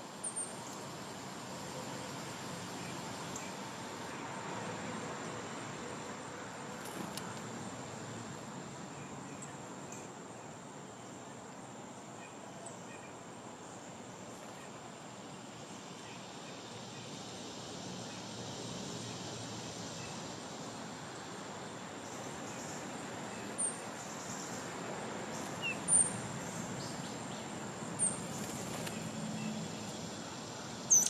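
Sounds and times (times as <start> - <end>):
high-pitched insect trill: 15.5 - 31.0.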